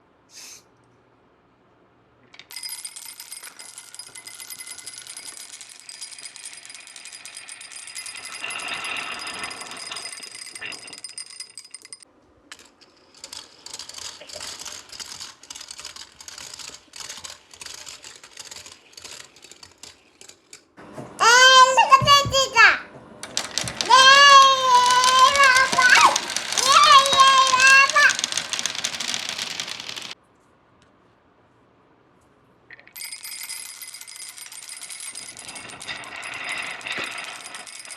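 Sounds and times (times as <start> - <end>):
balls clattering through wooden marble run: 2.5 - 12.0, 23.2 - 30.2, 33.1 - 37.9.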